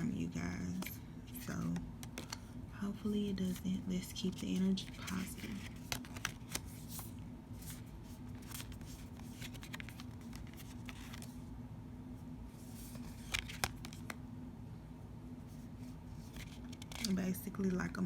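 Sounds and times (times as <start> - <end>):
steady low hum: 0.0 - 18.0
cards rustling and clicking: 1.6 - 2.6, 4.2 - 11.4, 12.6 - 14.2, 16.2 - 17.2.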